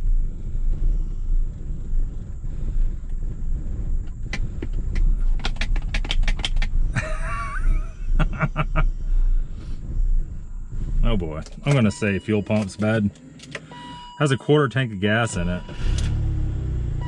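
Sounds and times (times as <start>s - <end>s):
car engine idling roughly: 0.0s - 7.9s
sharp clicks: 1.6s - 6.9s, 11.4s - 13.8s.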